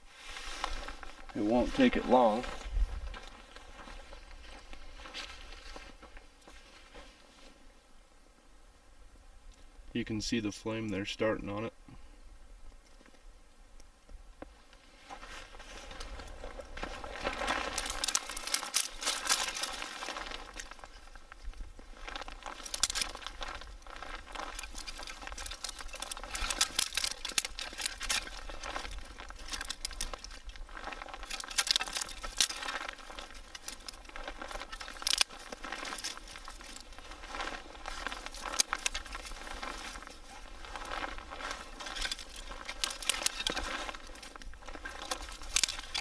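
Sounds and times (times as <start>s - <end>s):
wood fire crackling and popping: 15.9s - 46.0s.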